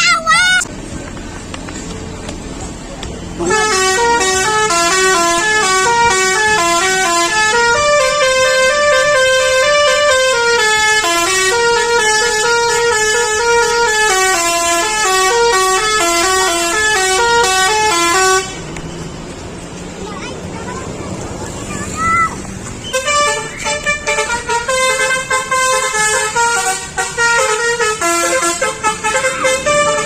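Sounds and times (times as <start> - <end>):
multi-tone musical bus horn: 3.3 - 18.7, 22.9 - 30.0.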